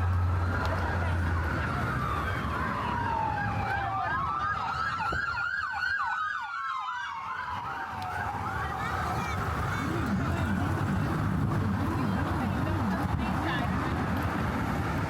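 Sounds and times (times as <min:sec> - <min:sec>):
siren wailing: 0:00.4 - 0:11.0
siren yelping: 0:01.3 - 0:10.6.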